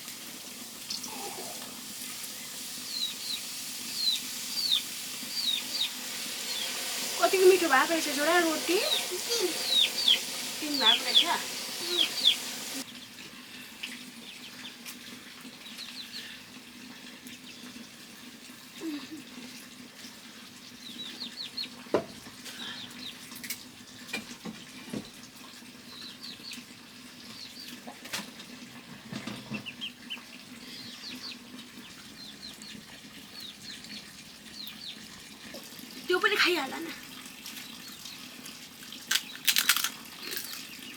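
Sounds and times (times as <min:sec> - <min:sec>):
small birds chirping: 0:02.8 - 0:13.1, 0:15.5 - 0:16.4, 0:20.6 - 0:21.8, 0:29.5 - 0:35.1, 0:37.5 - 0:38.4, 0:39.1 - 0:40.9.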